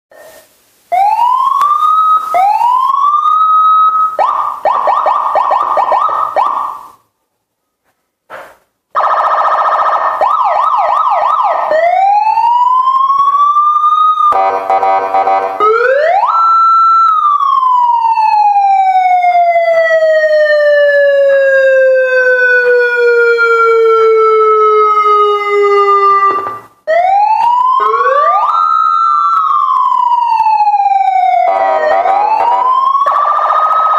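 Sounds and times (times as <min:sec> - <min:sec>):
electronic siren whooping and warbling: 0:09.0 - 0:33.9.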